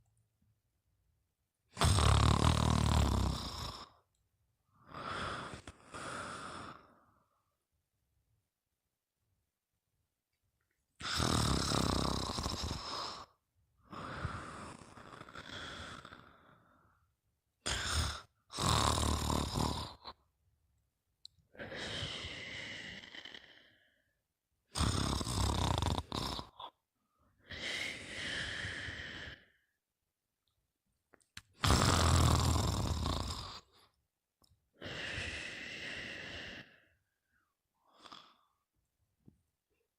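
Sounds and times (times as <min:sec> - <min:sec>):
loud snoring: 0:01.7 - 0:04.0, 0:11.0 - 0:13.3, 0:13.9 - 0:16.6, 0:17.6 - 0:20.2, 0:24.7 - 0:26.8, 0:31.6 - 0:33.8
soft long breath: 0:34.8 - 0:38.6.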